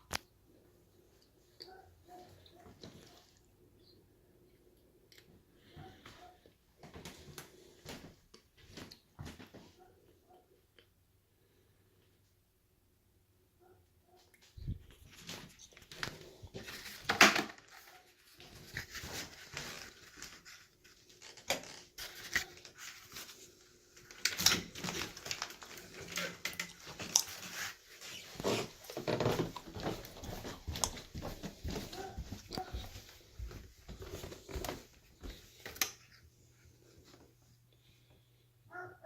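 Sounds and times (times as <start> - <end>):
dogs making noise: 1.5 - 3.4, 31.7 - 33.1
knocks and movement: 24.3 - 36.2.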